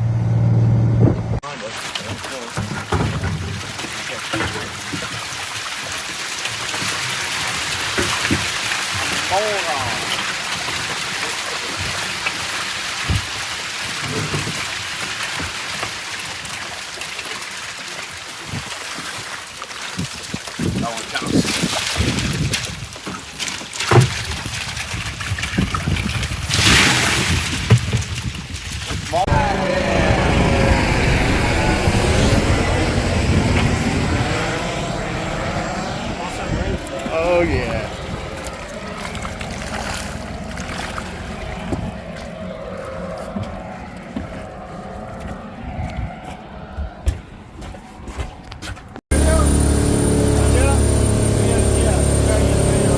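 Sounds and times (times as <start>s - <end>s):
boat engine rumbling: 0.0s - 1.5s, 29.1s - 45.6s, 49.1s - 52.9s
wind noise: 0.8s - 1.4s, 24.3s - 48.4s
loud hissing rush: 29.2s - 39.6s, 49.1s - 52.9s.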